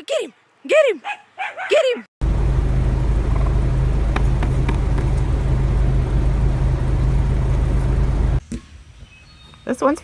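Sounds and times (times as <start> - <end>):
vehicle engine rumbling: 2.2 - 8.4.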